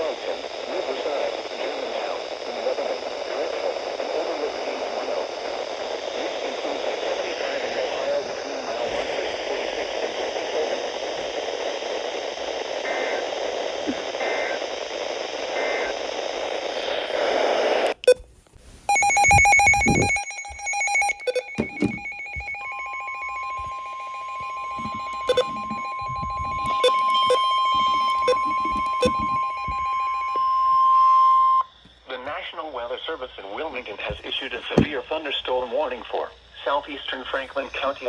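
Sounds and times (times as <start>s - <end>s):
radio static hiss: 0.0s - 38.0s
steady warning alarm tone: 18.9s - 31.7s.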